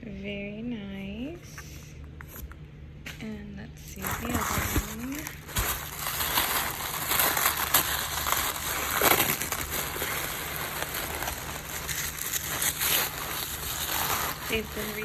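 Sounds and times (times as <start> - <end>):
packaging crinkling and rustling: 3.9 - 15.0.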